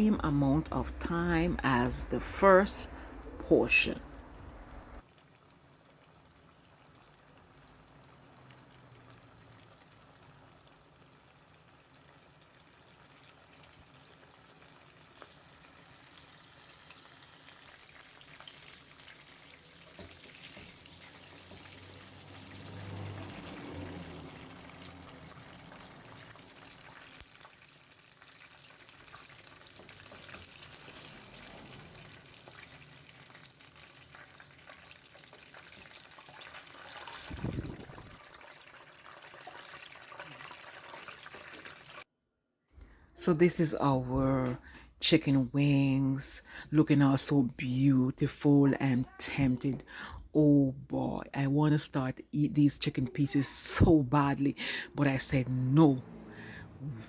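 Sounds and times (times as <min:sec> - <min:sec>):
chicken wings sizzling in oil: 0:04.3 - 0:42.1.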